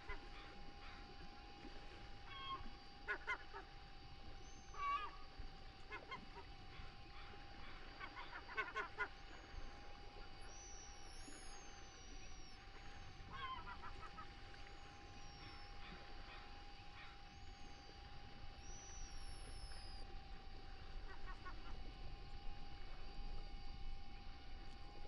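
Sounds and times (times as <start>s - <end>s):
birds calling: 0.0s - 1.2s, 2.2s - 3.8s, 4.4s - 23.0s
steady hum: 0.0s - 25.0s.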